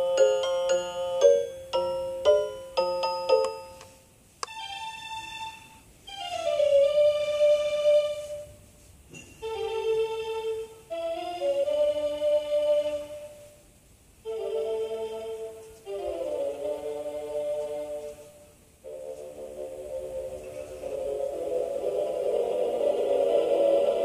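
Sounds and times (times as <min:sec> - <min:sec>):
electronic tune of held notes: 0:00.0 - 0:03.9
alarm clock click: 0:01.2 - 0:03.9.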